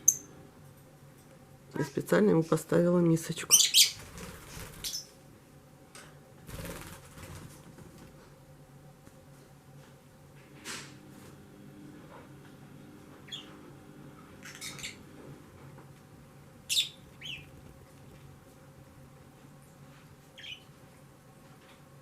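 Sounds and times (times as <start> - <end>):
parrots calling: 14.4 - 15.0, 16.7 - 17.5.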